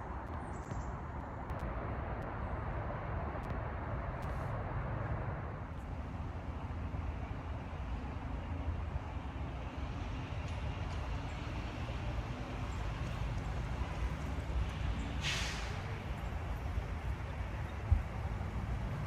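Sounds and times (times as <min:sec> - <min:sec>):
brief hiss: 0:15.2 - 0:16.0
wind rumble on microphone: 0:15.8 - 0:19.0.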